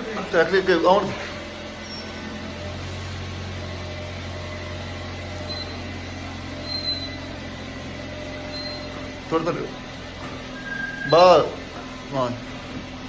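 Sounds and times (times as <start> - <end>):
truck engine humming: 0.0 - 13.0
brief high squeaks: 1.8 - 2.2, 5.2 - 9.0, 10.4 - 11.2.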